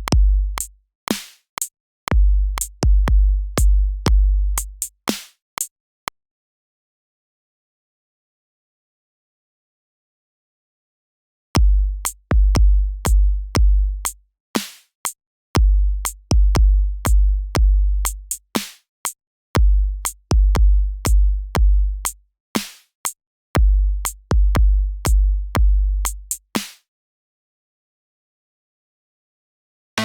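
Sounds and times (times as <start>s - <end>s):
drum machine beat: 0.0s - 5.7s, 11.6s - 21.2s, 22.0s - 23.2s, 24.0s - 26.7s.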